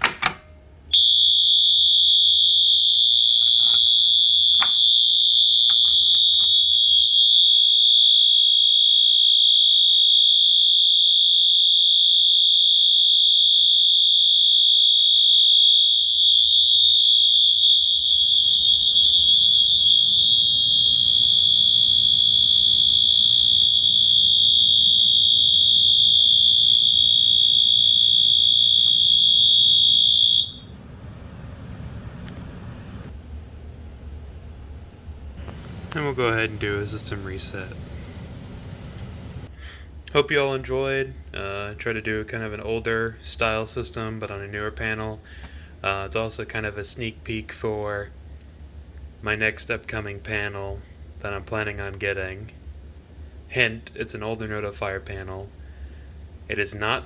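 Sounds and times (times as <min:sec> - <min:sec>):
fire alarm horn steady tone: 0:00.0 - 0:31.3.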